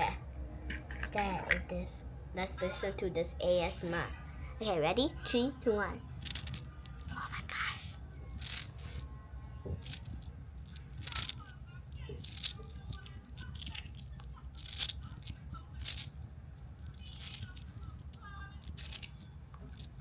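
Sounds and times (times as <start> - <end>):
magnetic balls clacking: 6.2 - 20.0.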